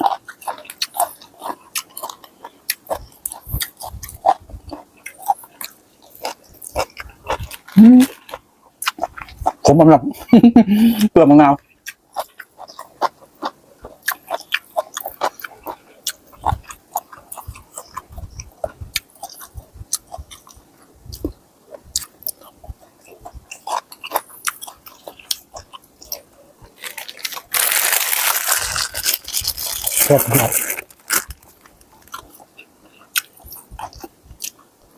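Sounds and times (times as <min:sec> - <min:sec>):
chewing crunchy vegetables: 0:00.0 - 0:09.9, 0:10.9 - 0:34.9.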